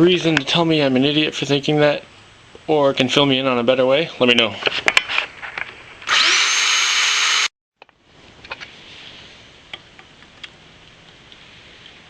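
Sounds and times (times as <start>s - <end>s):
drill cutting into aluminum: 6.1s - 7.5s
electric drill whining: 6.1s - 7.5s.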